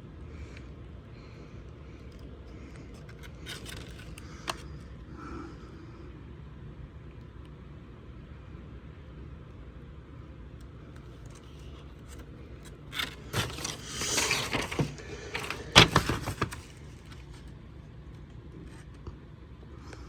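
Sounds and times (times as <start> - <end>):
low steady hum: 0.0 - 20.0
rustling and scraping: 2.5 - 4.8, 11.1 - 17.5.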